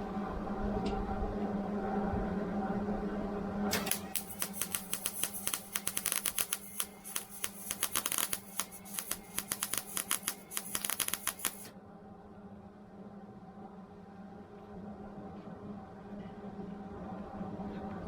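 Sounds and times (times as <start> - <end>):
steady low hum: 3.7 - 11.7
welding arc crackling: 3.7 - 11.7.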